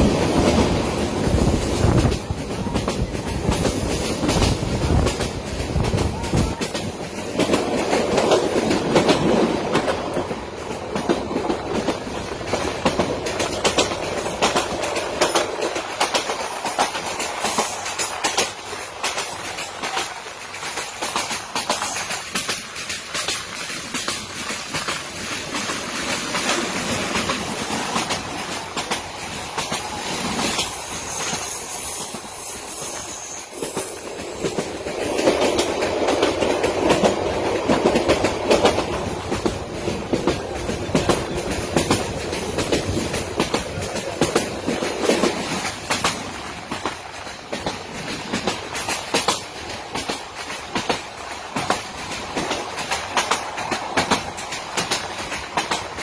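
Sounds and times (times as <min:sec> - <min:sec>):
rumble of train cars: 0:00.0 - 0:56.0
train wheels clicking on rail joints: 0:00.0 - 0:56.0
high wheel squeal: 0:29.6 - 0:34.1.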